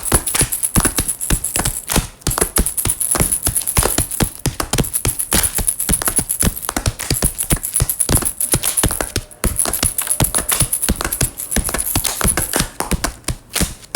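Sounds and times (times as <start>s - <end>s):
rapid irregular clicking: 0.0s - 13.9s
faint steady high tone: 2.4s - 12.8s.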